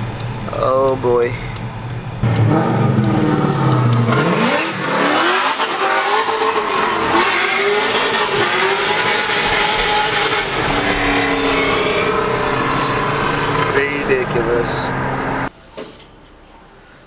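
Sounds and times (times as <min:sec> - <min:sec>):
engine revving hard: 0:02.2 - 0:15.5.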